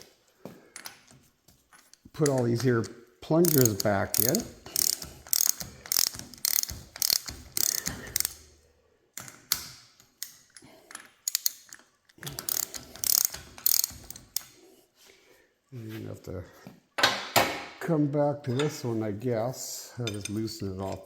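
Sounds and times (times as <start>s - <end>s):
ratchet wrench clicking: 3.4s - 8.5s, 11.2s - 14.6s.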